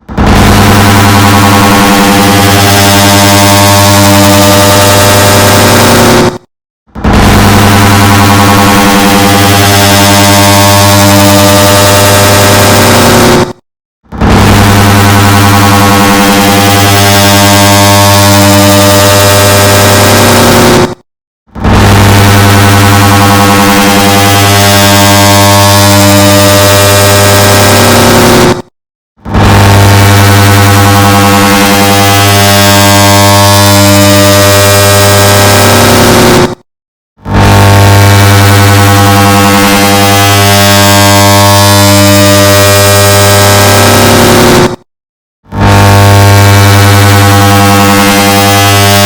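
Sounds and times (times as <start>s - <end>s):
distorted air conditioner drone: 0.2s - 6.3s, 14.2s - 20.8s, 21.6s - 28.5s, 29.3s - 36.4s, 37.3s - 44.3s, 45.6s - 49.0s.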